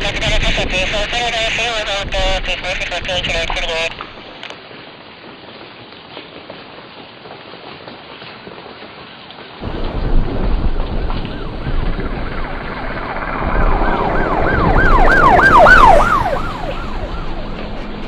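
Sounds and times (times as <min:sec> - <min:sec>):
low rumble: 0:09.6 - 0:18.0
wailing swooping tone: 0:11.2 - 0:18.0.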